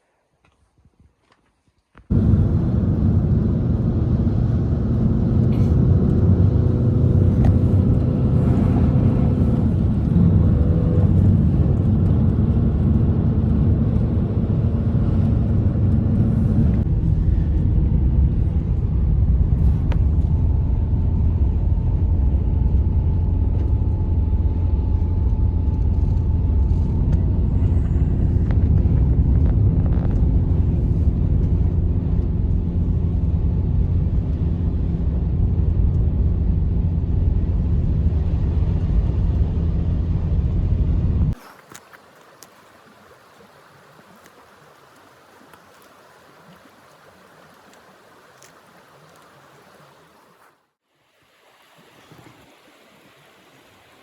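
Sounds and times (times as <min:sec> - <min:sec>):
blizzard wind blowing hard: 0:02.1 - 0:23.5.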